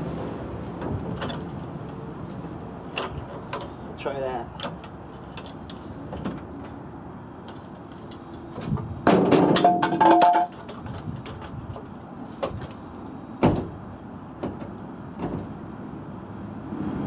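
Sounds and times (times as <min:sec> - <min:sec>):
truck door creaking and scraping: 0:00.0 - 0:15.8
door shutting with a clunk: 0:13.4 - 0:13.8, 0:14.4 - 0:15.6.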